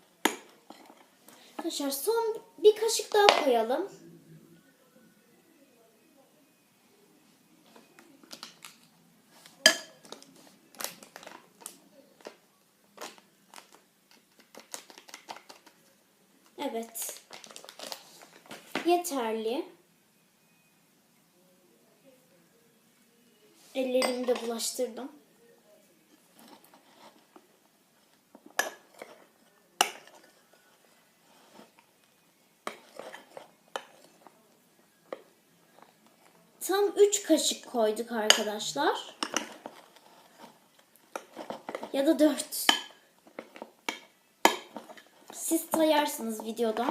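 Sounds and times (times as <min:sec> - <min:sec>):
spoon scraping in a bowl: 0:32.6 - 0:34.2.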